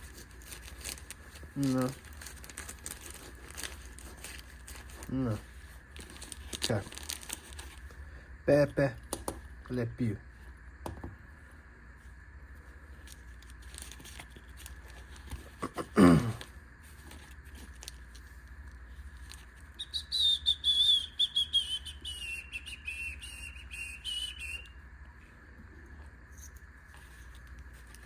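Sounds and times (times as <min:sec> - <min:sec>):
wavering high whistling: 0:19.7 - 0:24.8
loud falling whistle sweep: 0:19.8 - 0:24.7.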